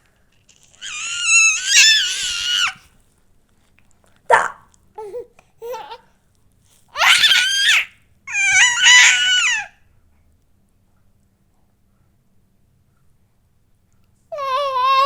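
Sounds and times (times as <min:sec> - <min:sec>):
high-pitched vocal squeals: 0:00.6 - 0:02.8, 0:07.0 - 0:09.7.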